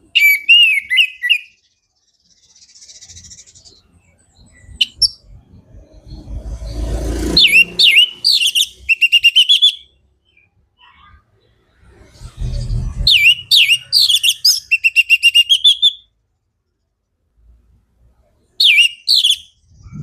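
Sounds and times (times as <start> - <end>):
thrush singing whistled phrases: 0.0 - 1.6, 7.4 - 10.5, 12.2 - 16.1, 18.6 - 20.0
faint bird trill: 7.4 - 16.2, 18.5 - 20.0
low rumble: 11.7 - 13.4, 19.6 - 20.0.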